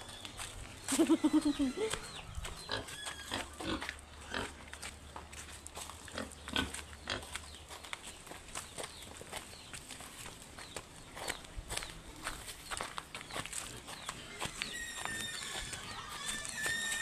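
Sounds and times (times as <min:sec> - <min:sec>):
pigs grunting: 0:01.6 - 0:04.7.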